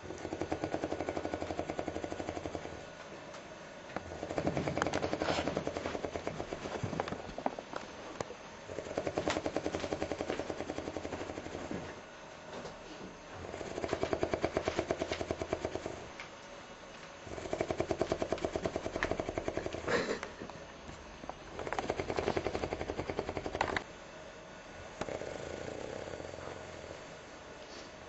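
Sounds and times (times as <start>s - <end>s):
person snoring: 17.3s - 20.2s, 25.0s - 27.1s.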